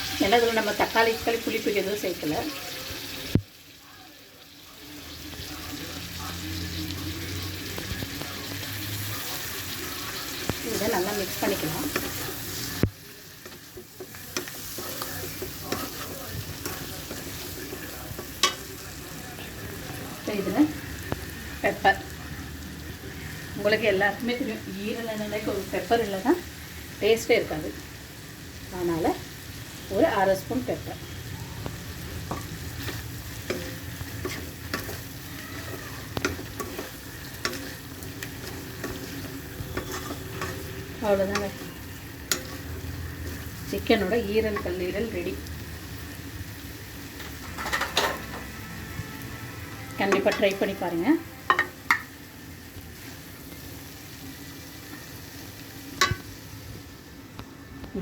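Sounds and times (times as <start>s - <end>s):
food sizzling in a pan: 0.0s - 58.0s
utensil scraping a pan: 32.3s - 43.5s
spoon scraping and clinking pan: 36.2s - 41.6s, 47.4s - 48.5s, 51.4s - 52.1s, 56.0s - 56.3s
spoon knocking on pan: 51.4s - 52.1s, 56.0s - 56.3s.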